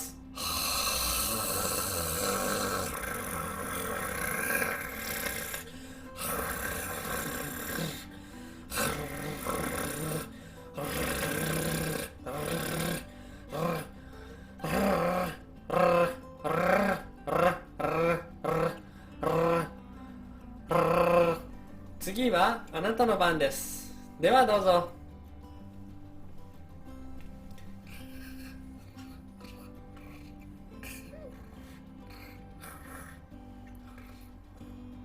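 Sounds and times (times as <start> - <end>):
forceful exhale with snore-like rasp: 0.0 - 15.3, 27.8 - 34.4
person attempting rolled r sounds: 8.7 - 13.9.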